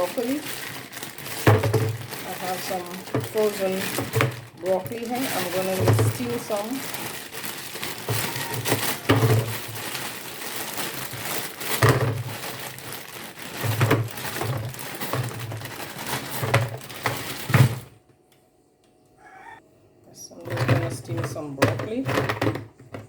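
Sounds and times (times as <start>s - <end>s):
plastic bag crinkling: 0.0s - 18.0s.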